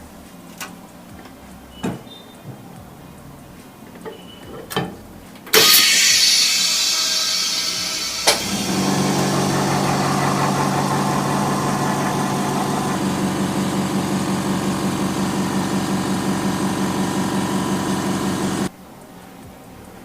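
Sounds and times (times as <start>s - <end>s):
air compressor humming: 5.5s - 18.7s
switch click: 8.2s - 8.5s.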